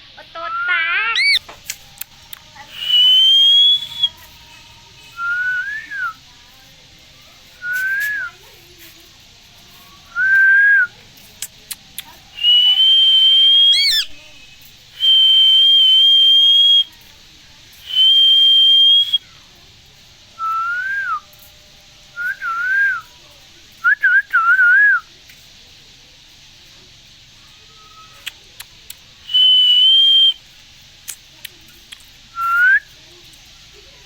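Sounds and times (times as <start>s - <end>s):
person whistling: 2.7s - 4.2s, 5.2s - 6.2s, 7.6s - 8.3s, 10.1s - 10.9s, 12.4s - 14.2s, 15.0s - 16.9s, 17.9s - 19.2s, 20.4s - 21.2s, 22.2s - 23.0s, 29.3s - 30.4s.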